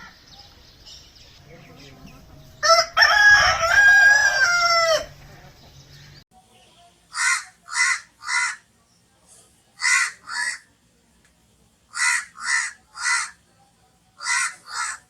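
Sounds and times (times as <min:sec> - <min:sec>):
crow cawing: 0:07.1 - 0:08.7, 0:09.8 - 0:10.7, 0:11.9 - 0:13.4, 0:14.2 - 0:15.0.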